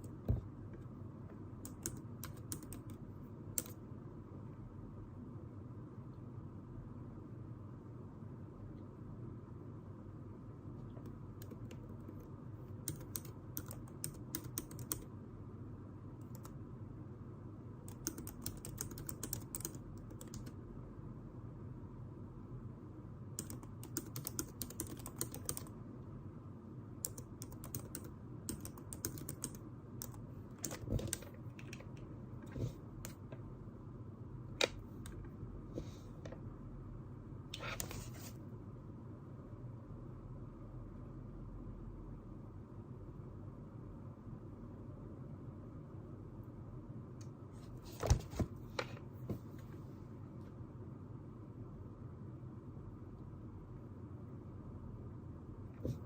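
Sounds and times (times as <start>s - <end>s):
low room hum: 0.0s - 56.0s
rapid keyboard clicking: 1.6s - 3.0s, 3.6s - 3.8s, 12.8s - 15.1s, 17.9s - 20.6s, 23.4s - 25.7s, 27.0s - 32.1s.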